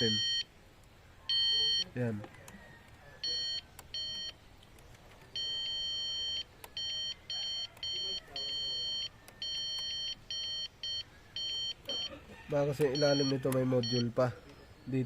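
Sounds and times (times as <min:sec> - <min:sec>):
circuit tester beeping: 0:00.0 - 0:00.5, 0:01.3 - 0:02.0, 0:03.2 - 0:04.5, 0:05.3 - 0:14.3.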